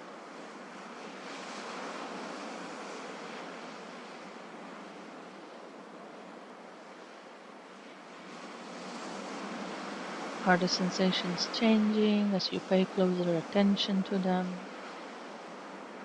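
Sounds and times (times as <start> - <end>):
sea waves washing ashore: 0.0 - 16.0.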